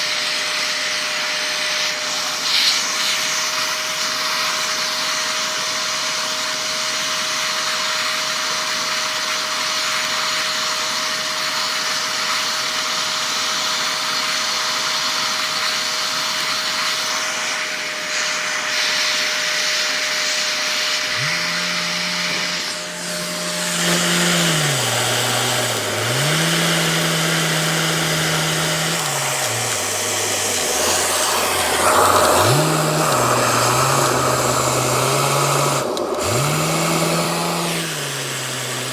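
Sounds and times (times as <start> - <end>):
vacuum cleaner running: 0.0 - 38.9
thin whine: 17.4 - 38.9.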